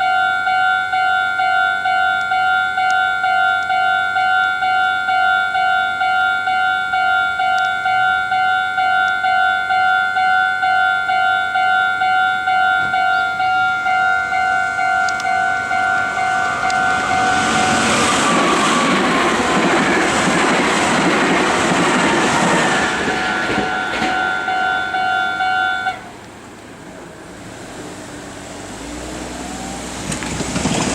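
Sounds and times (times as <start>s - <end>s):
level-crossing bell dinging: 0.0s - 17.9s
train whine: 0.0s - 30.9s
train rumbling over rail joints: 6.0s - 30.9s.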